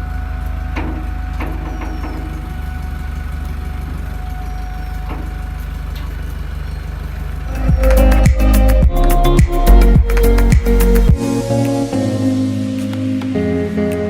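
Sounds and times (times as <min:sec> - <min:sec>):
heavy engine rumbling: 0:00.0 - 0:13.9.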